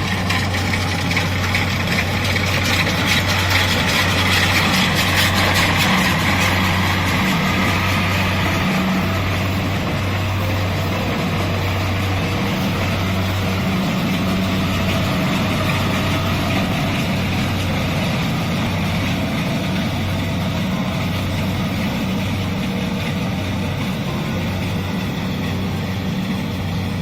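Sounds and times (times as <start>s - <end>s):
combine harvester diesel engine drone: 0.0s - 27.0s.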